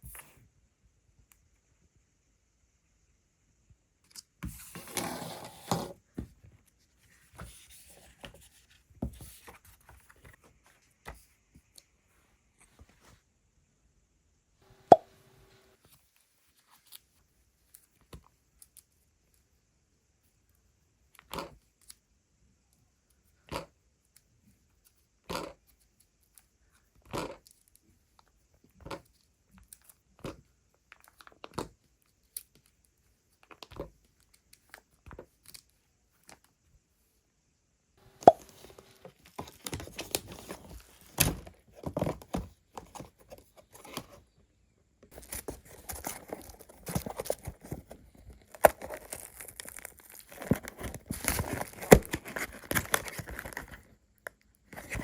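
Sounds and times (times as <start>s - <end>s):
packaging tearing and crinkling: 45.1s - 53.8s.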